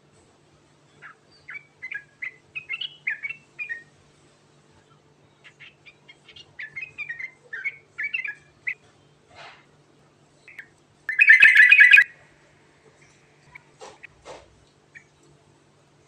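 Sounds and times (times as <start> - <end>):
bird singing chirpy notes: 10.5 - 12.2
bird harsh chattering: 11.1 - 12.1.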